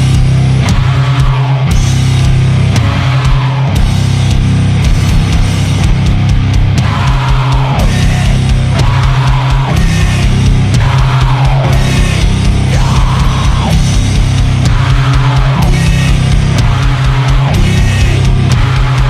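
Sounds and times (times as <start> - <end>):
distorted guitar and bass riff: 0.0 - 19.0
drums and cymbals: 0.0 - 19.0.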